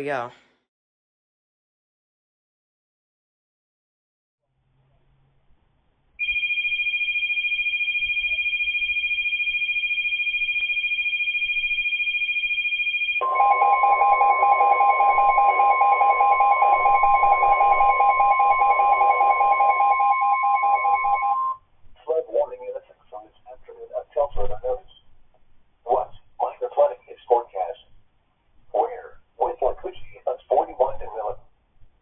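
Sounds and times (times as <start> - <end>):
pulsing beep: 13.2 - 21.6.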